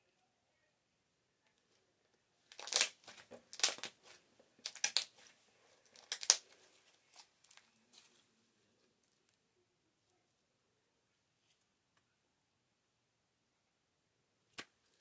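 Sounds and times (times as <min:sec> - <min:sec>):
slime crackly popping: 0:02.5 - 0:04.0, 0:04.6 - 0:05.1, 0:06.0 - 0:06.4.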